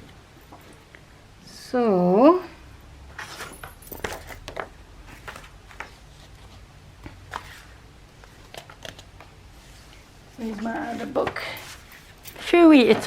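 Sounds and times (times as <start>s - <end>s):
paper rustling: 3.2s - 13.0s.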